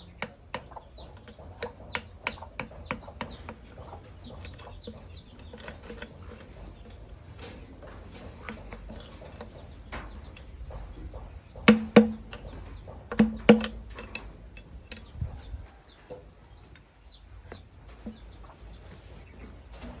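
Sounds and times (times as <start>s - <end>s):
small chirps: 0.0s - 7.1s
mallet striking chisel: 11.6s - 12.3s.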